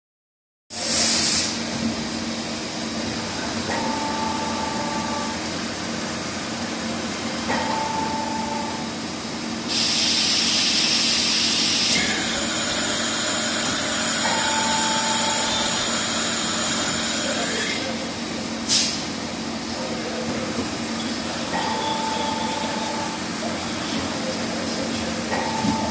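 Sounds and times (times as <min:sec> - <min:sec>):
hiss: 0:00.8 - 0:01.6, 0:09.7 - 0:12.0
high steady whine: 0:11.8 - 0:18.1.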